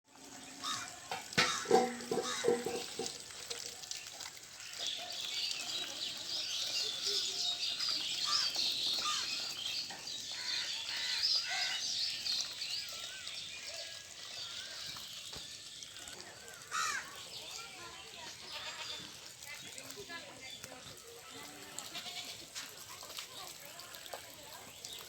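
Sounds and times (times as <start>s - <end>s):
small birds chirping: 0.3s - 25.0s.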